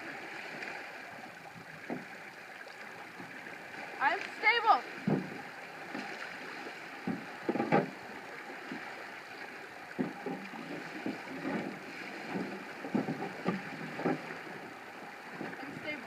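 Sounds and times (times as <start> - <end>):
knocks on canoe hull: 5.0 - 6.2, 7.0 - 8.0, 9.9 - 14.5.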